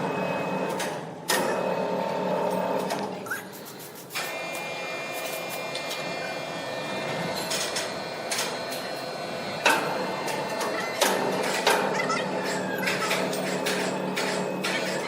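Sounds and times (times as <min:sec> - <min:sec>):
sawmill machinery whining: 0:04.2 - 0:15.0.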